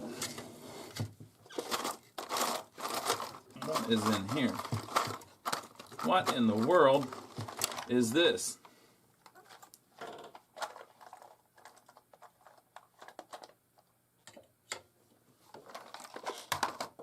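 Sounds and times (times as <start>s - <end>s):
small parts clicking and rattling: 1.5s - 8.0s, 9.2s - 13.6s.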